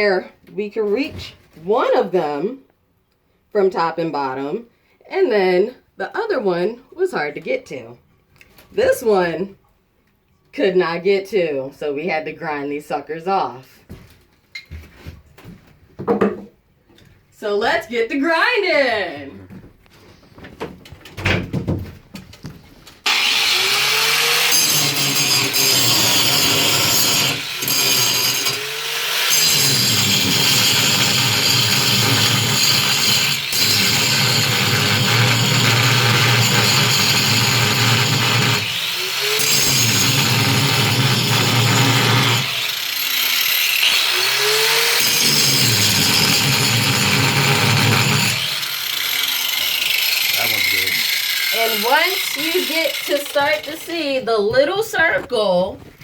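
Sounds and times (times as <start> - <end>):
angle grinder cutting metal: 23.0 - 54.3.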